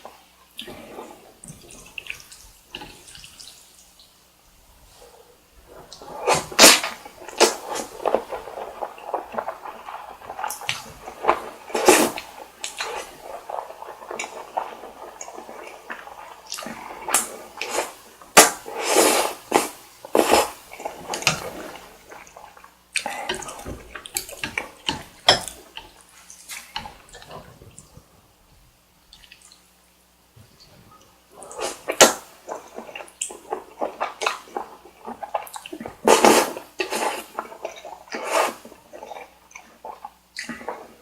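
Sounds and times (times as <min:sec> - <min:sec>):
wet chewing and smacking: 0:05.9 - 0:18.4, 0:31.8 - 0:41.0.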